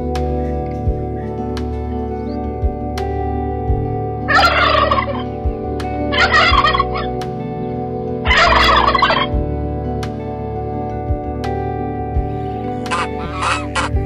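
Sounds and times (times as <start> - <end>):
background music: 0.0 - 14.0
turkey gobbling: 4.3 - 5.2, 6.2 - 7.1, 8.3 - 9.3, 12.7 - 14.0.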